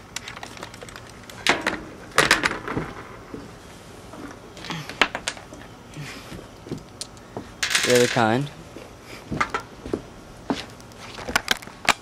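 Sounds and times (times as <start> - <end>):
rifle parts clicking and clacking: 7.0 - 8.4.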